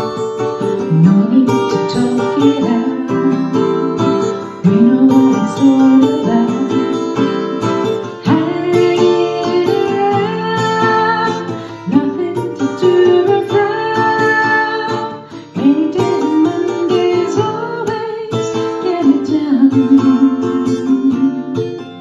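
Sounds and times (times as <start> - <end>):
plucked acoustic guitar: 0.0 - 22.0.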